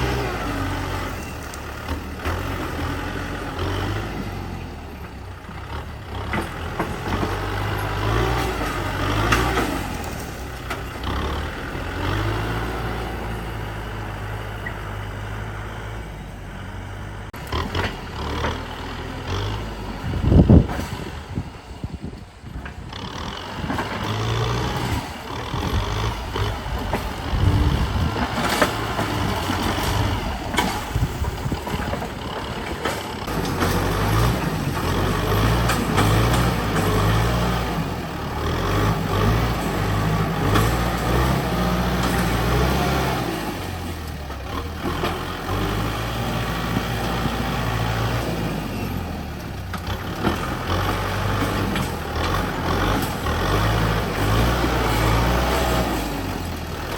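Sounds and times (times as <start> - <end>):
diesel engine working under load: 0.0 - 56.9
machinery knocks and clatter: 5.0 - 13.1, 22.5 - 56.9.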